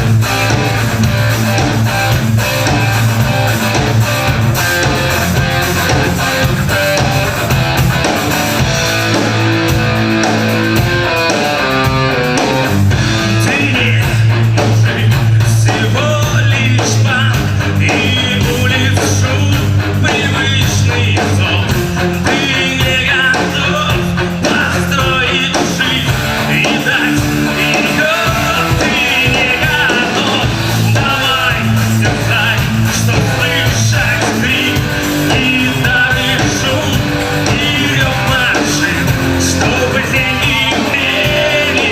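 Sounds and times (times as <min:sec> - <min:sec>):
rock band playing live: 0:00.0 - 0:41.9
person singing: 0:11.3 - 0:41.9.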